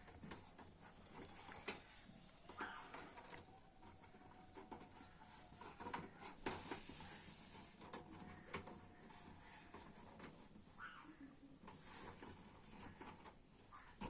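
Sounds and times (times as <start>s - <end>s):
faint handling clicks and taps: 0.0s - 10.7s.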